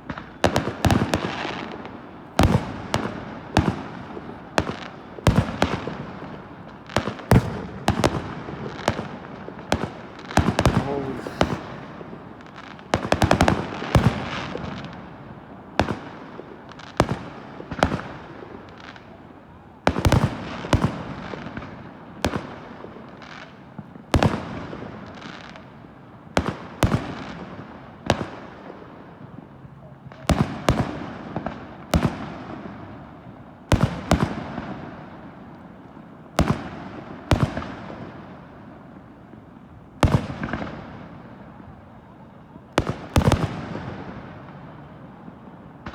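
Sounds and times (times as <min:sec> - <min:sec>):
fireworks exploding: 0:00.0 - 0:15.2, 0:42.6 - 0:45.9.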